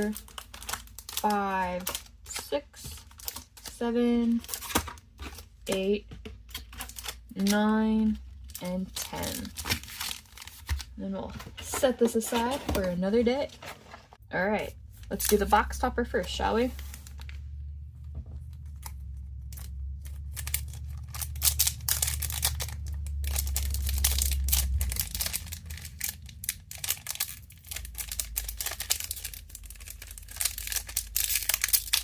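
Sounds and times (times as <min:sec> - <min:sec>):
wrapper tearing and crinkling: 0:00.0 - 0:05.5, 0:06.5 - 0:07.5, 0:08.4 - 0:10.9, 0:18.6 - 0:32.0
low steady hum: 0:00.0 - 0:32.0.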